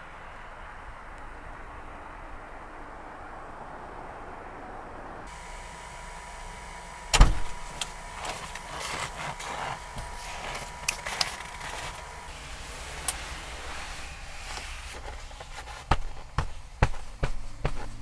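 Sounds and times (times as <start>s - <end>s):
loud deep thump: 7.2s - 7.7s, 15.9s - 18.0s
small clicks and rustling: 7.4s - 17.7s.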